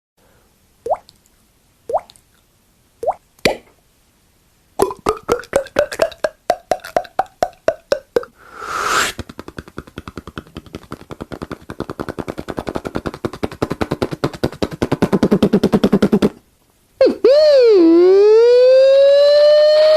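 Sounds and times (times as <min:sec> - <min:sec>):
mouth pops: 0:04.8 - 0:10.0
mouth hiss: 0:08.2 - 0:09.3.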